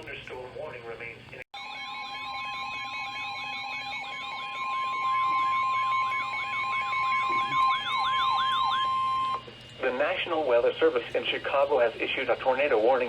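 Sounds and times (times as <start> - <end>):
siren-like rising and falling sweep: 1.6 - 9.4.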